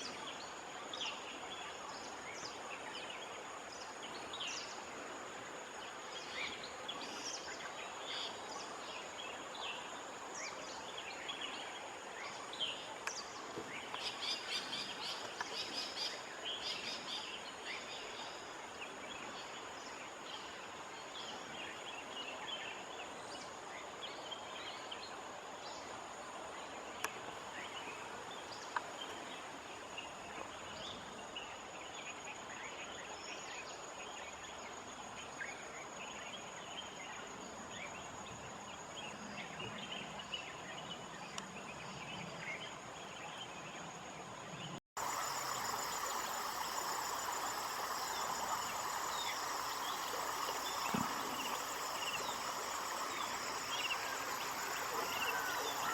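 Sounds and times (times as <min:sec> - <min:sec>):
bird chirps: 0:45.0 - 0:55.9
high insect drone: 0:45.0 - 0:55.9
pulsing insect trill: 0:45.0 - 0:55.9.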